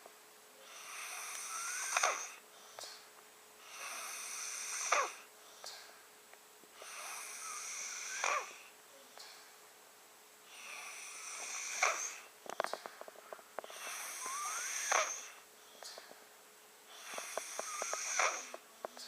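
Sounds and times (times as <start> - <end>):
child snoring: 0.6 - 2.4, 3.6 - 5.8, 6.8 - 8.7, 10.5 - 12.3, 13.6 - 15.4, 16.9 - 19.0.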